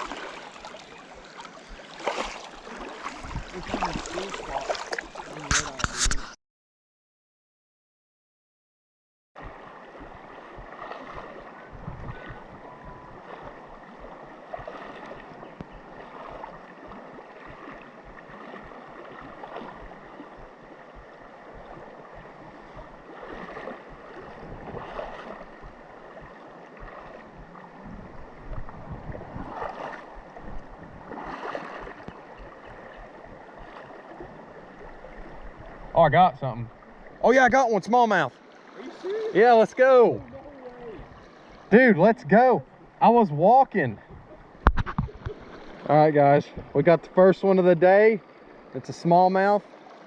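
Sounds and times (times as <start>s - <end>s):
creek water rushing: 0.0s - 6.1s, 9.4s - 50.0s
wind buffeting microphone: 3.1s - 4.7s, 11.6s - 14.7s, 19.5s - 36.0s, 44.0s - 45.8s.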